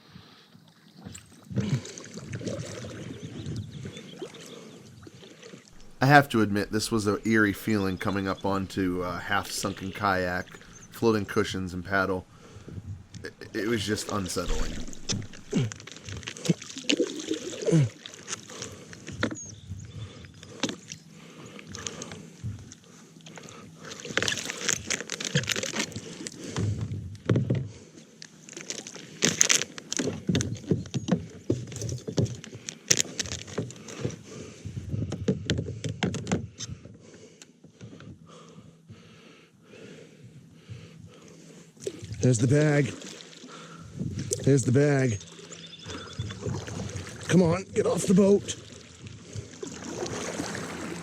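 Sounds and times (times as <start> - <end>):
water splashing from paddle: 5.2 - 18.7, 41.8 - 44.5, 45.2 - 51.0.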